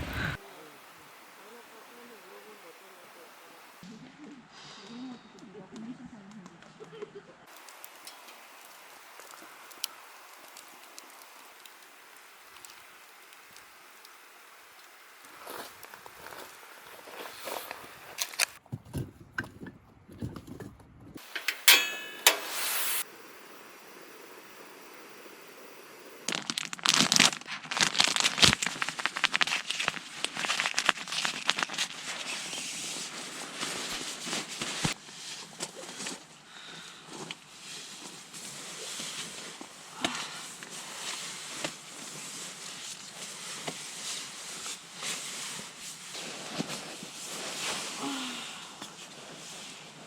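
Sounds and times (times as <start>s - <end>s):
firewood crackling and popping: 0.0s - 0.4s, 7.5s - 18.6s, 26.1s - 32.6s.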